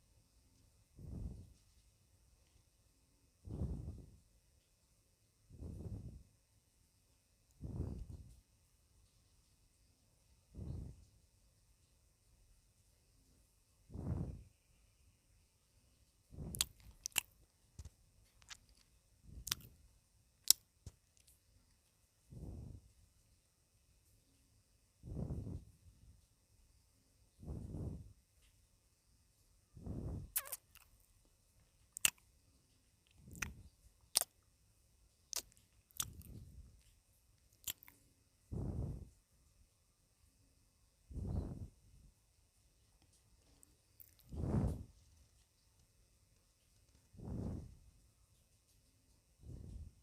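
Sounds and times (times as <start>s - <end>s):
soft puff: 3.5s - 4.1s, 5.6s - 6.2s, 7.6s - 8.3s, 25.1s - 25.6s, 27.4s - 28.1s, 29.8s - 30.6s, 38.6s - 39.1s, 44.3s - 44.9s
chewing with wet mouth clicks: 16.5s - 19.7s, 30.4s - 30.9s, 31.9s - 32.2s, 33.1s - 34.4s, 35.3s - 36.4s, 37.5s - 38.0s, 44.0s - 44.3s.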